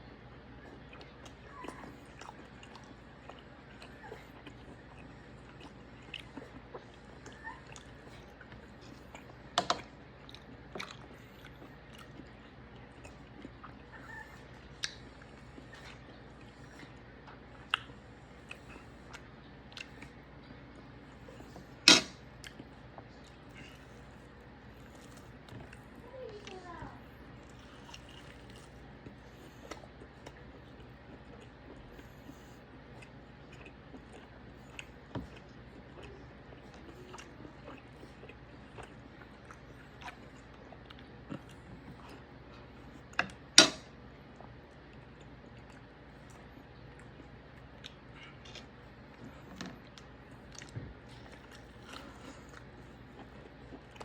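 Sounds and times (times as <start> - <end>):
person chewing: 0.7 - 54.0
cutlery clicking on plate: 21.9 - 22.2, 43.6 - 43.8.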